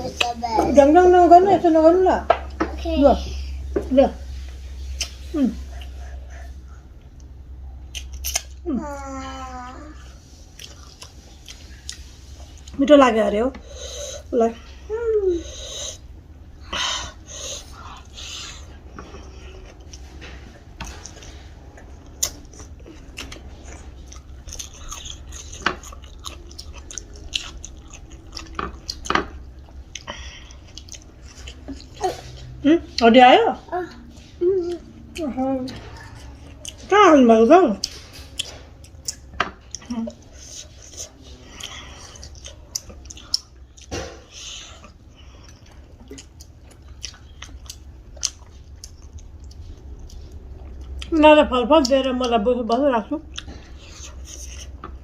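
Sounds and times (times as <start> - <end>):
steady low hum: 0.0 - 55.0
wet mouth clicks and smacks: 7.9 - 8.6
close-miked chewing: 10.3 - 12.8, 17.1 - 33.1, 33.7 - 36.9, 37.8 - 51.2, 51.8 - 55.0.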